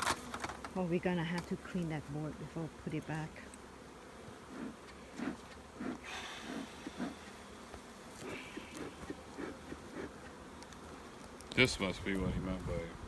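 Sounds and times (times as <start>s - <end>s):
bees buzzing: 0.0s - 12.3s.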